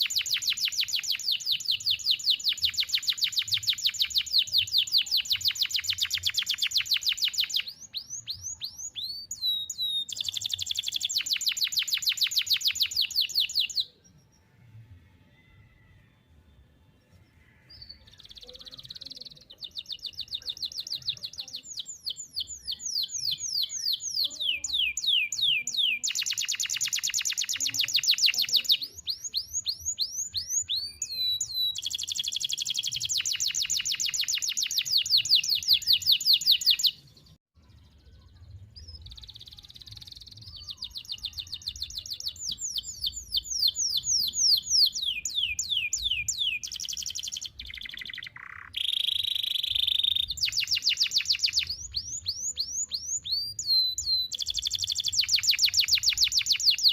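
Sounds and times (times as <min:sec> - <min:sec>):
canary singing trills: 0:00.0 - 0:14.6, 0:16.7 - 0:56.9.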